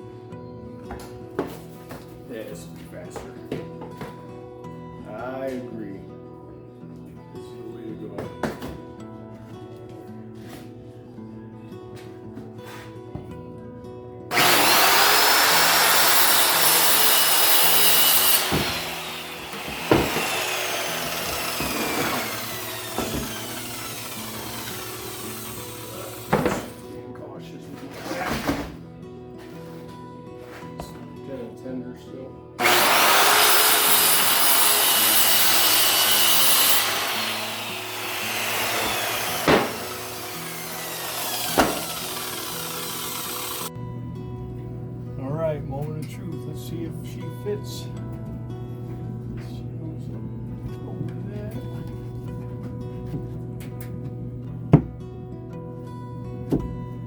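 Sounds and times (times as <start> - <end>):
circular saw cutting board: 14.3 - 26.9, 32.6 - 43.7
saw motor winding down: 14.3 - 26.9, 32.6 - 43.7.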